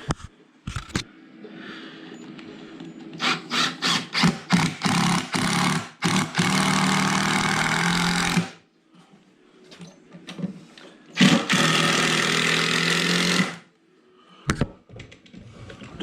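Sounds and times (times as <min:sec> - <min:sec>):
electric drill motor running: 0:03.2 - 0:08.6, 0:11.2 - 0:13.7.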